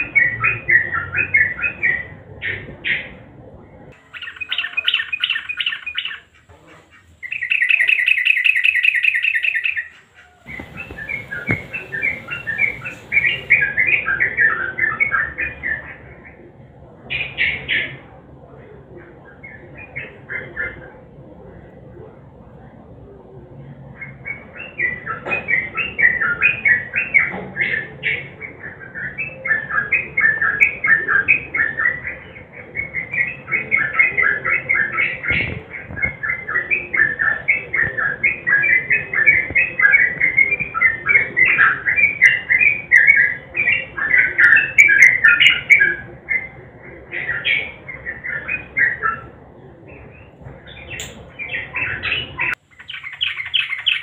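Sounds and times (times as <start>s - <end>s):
bird singing chattering notes: 4.0s - 15.8s, 50.6s - 54.0s.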